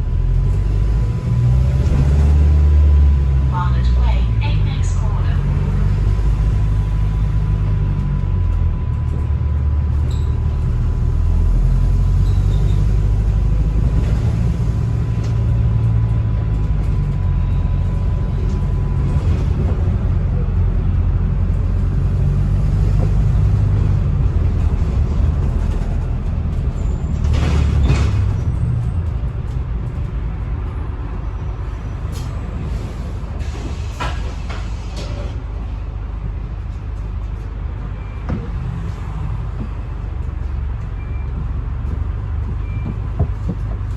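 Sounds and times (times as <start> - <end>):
bus drivetrain and road rumble: 0.0 - 43.9.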